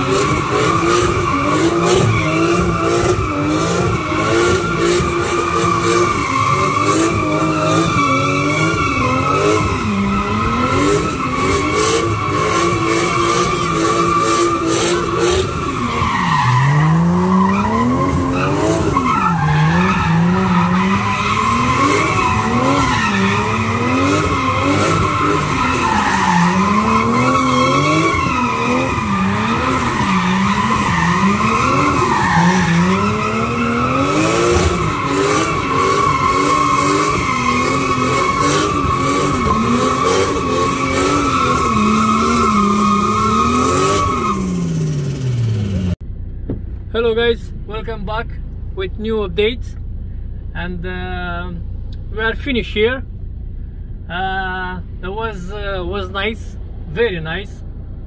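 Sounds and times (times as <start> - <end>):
tyres screeching: 0.0 - 45.3
car engine revving: 0.0 - 46.9.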